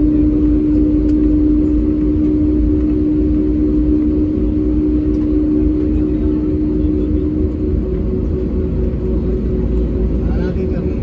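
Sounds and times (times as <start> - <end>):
aircraft cabin low rumble: 0.0 - 11.0
constant hum: 0.0 - 11.0.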